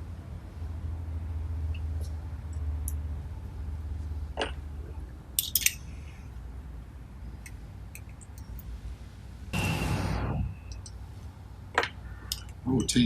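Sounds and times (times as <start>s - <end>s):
steady low hum: 0.0s - 13.0s
metal parts and tools clinking: 5.3s - 6.1s, 7.4s - 8.7s.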